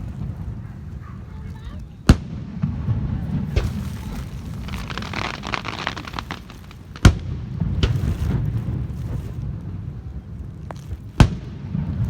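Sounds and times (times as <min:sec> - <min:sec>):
fireworks crackling: 0:00.0 - 0:12.0
fireworks loud sharp bang: 0:02.0 - 0:09.4, 0:11.2 - 0:12.0
fireworks thump: 0:02.0 - 0:09.4.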